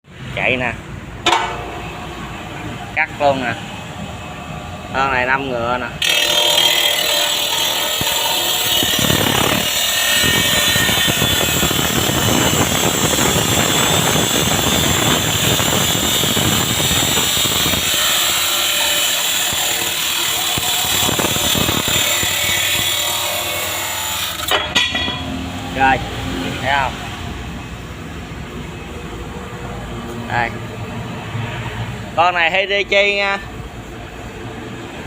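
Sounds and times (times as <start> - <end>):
stone-cutting saw grinding whine: 6.0 - 25.8.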